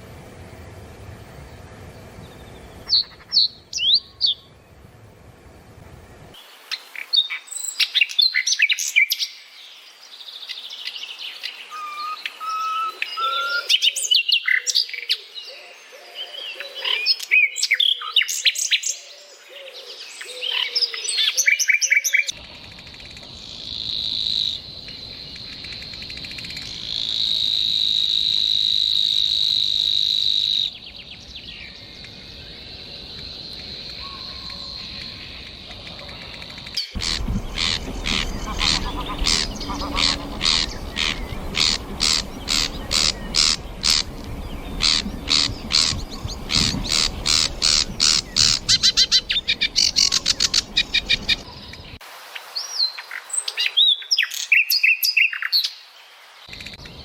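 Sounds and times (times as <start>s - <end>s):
songbirds singing: 1.3s - 4.9s, 30.5s - 52.0s.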